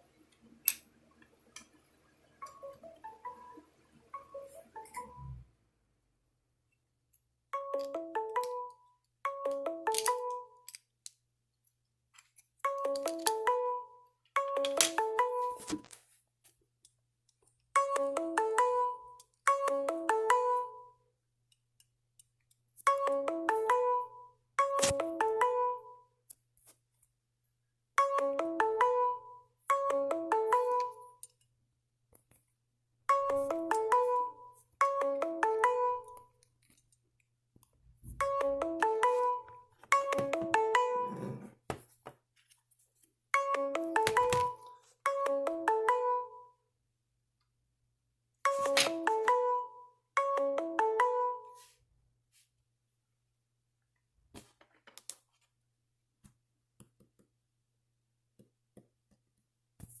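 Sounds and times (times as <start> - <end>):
mobile phone alarm melody: 2.4 - 5.4, 7.6 - 10.6, 17.8 - 21.0, 22.9 - 26.0, 28.0 - 31.2, 33.1 - 36.4, 38.1 - 41.2, 43.4 - 46.6, 48.5 - 51.8.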